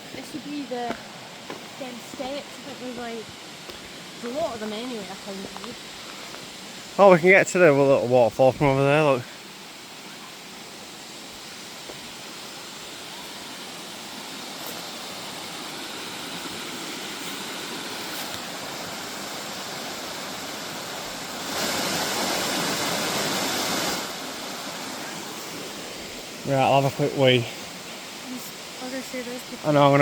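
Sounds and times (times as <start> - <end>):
waterfall rushing: 0.0 - 30.0.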